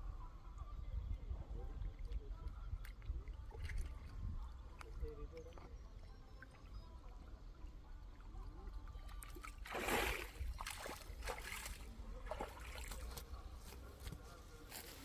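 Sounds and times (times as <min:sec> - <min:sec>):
water splashing: 0:02.8 - 0:07.1, 0:08.2 - 0:13.3.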